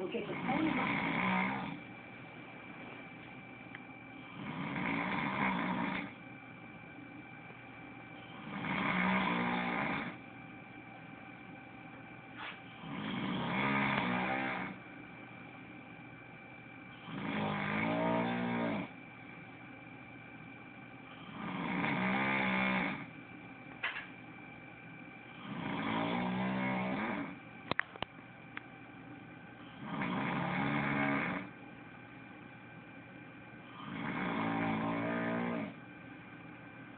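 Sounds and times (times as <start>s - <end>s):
person snoring: 0.3s - 1.8s, 4.3s - 6.2s, 8.4s - 10.2s, 12.8s - 14.8s, 17.0s - 19.0s, 21.3s - 23.1s, 25.4s - 27.4s, 29.7s - 31.5s, 33.8s - 35.8s.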